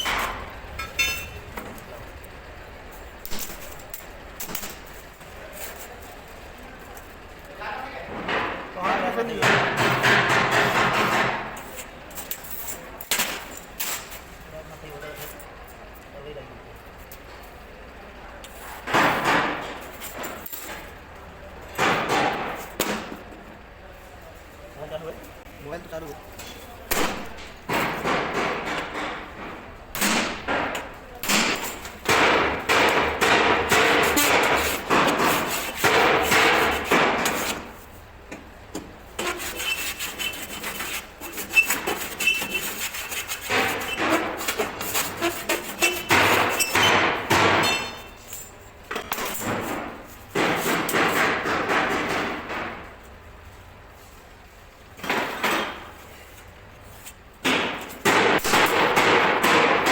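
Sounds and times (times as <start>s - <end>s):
steel ringing: 0.8s - 1.5s
rough metal noise: 39.2s - 46.9s.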